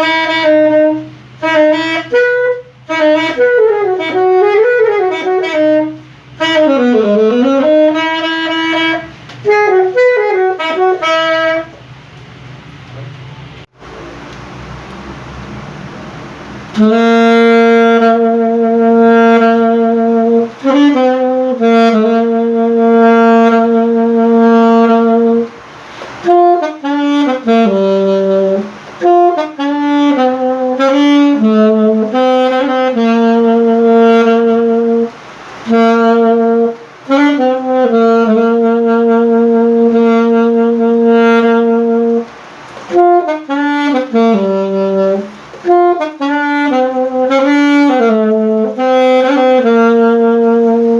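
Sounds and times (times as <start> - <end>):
alto saxophone melody: 0.0 - 50.9.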